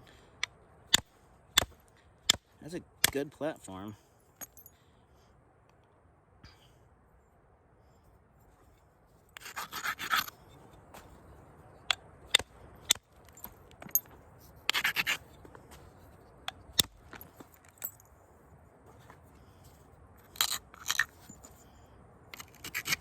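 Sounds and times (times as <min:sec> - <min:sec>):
bone tool striking stone: 0:00.9 - 0:03.2
stone edge scraping: 0:09.4 - 0:11.1, 0:14.7 - 0:15.4, 0:22.4 - 0:23.0.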